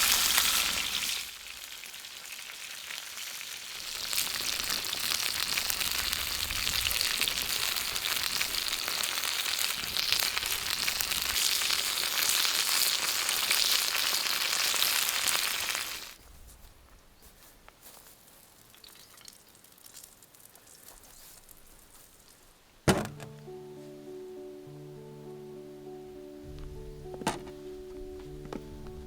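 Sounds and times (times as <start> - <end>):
sausages sizzling in hot oil: 0.0 - 16.2.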